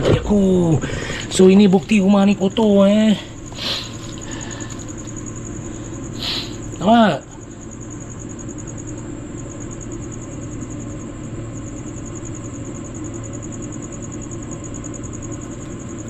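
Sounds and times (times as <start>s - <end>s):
low steady hum: 0.0s - 10.4s
crickets trilling: 0.0s - 16.0s.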